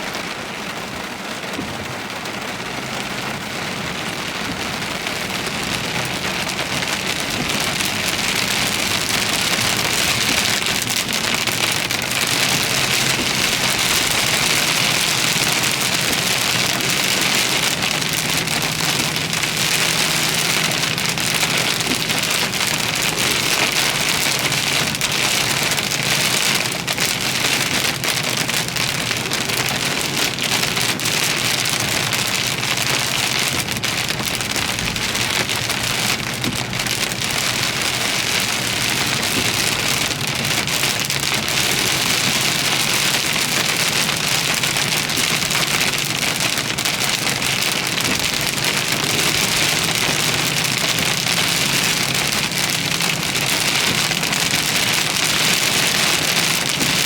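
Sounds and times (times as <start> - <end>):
heavy rain on a car: 0.0 - 57.0.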